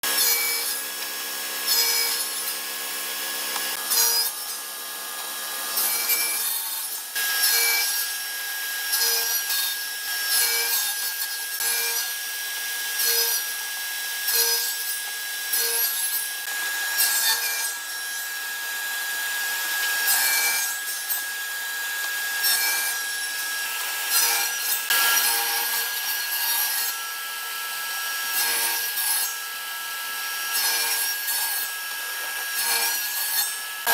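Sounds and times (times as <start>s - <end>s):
tool rasping wood: 0.0s - 2.7s, 14.2s - 29.5s, 30.3s - 33.9s.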